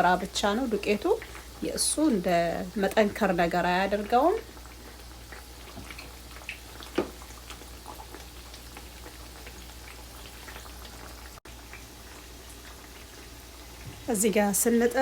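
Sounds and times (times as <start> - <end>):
deep-frying sizzle: 0.0 - 15.0
oil pops and crackles: 4.0 - 14.1.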